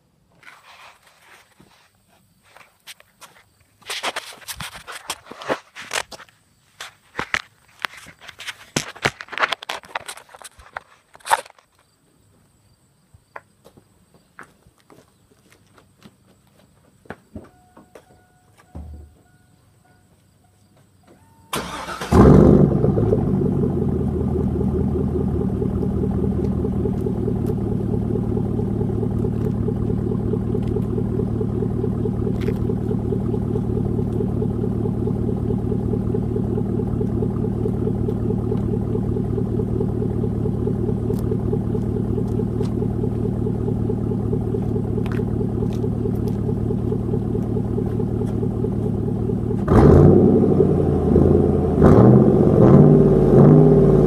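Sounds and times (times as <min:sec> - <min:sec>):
engine cranking and starting: 0:21.5 - 0:50.4
engine idling: 0:21.5 - 0:51.9.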